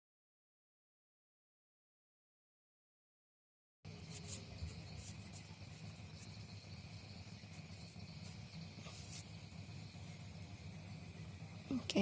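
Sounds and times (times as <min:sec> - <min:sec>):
steady low hum: 0:03.9 - 0:12.0.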